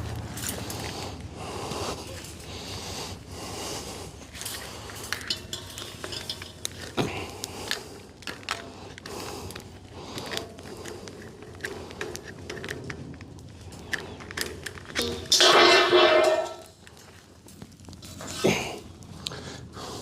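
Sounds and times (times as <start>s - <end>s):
metal pan clattering: 5.0s - 7.0s, 15.0s - 16.7s.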